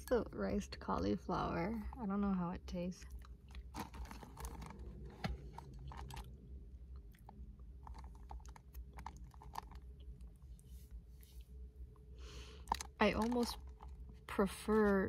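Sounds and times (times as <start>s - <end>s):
person chewing crunchy food: 3.0s - 10.6s, 12.4s - 14.1s.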